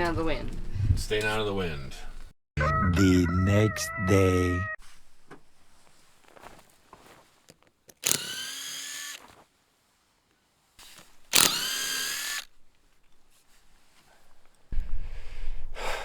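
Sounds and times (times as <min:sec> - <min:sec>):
power tool whining: 0:07.9 - 0:09.3, 0:11.3 - 0:12.5.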